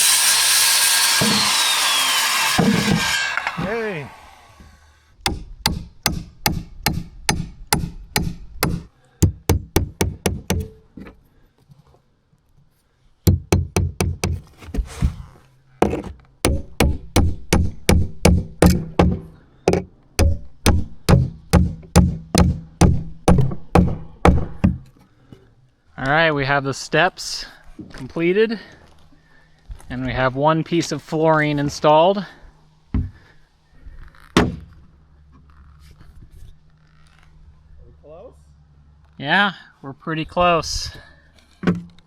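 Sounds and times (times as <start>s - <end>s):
hammer driving nails: 1.0s - 3.7s, 5.3s - 10.8s, 13.3s - 14.4s, 15.8s - 24.9s.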